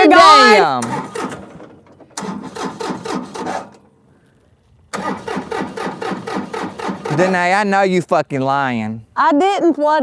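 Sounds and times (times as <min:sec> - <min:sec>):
tractor engine cranking: 0:00.0 - 0:07.8.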